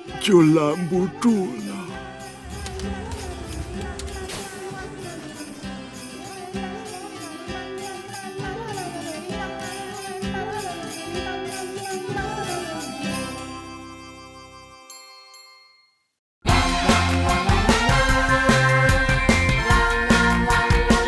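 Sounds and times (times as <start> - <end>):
cartoon background music: 0.0 - 5.6.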